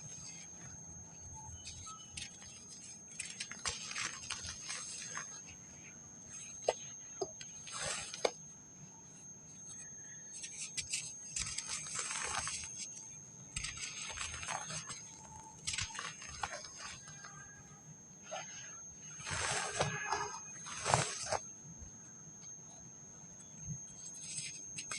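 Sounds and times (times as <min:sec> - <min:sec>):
sand crumbling and crunching: 0:11.4 - 0:12.7, 0:13.6 - 0:17.3, 0:18.4 - 0:21.4.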